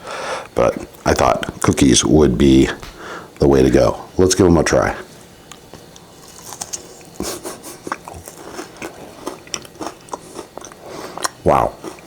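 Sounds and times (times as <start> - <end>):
crunchy chewing: 5.4 - 12.0.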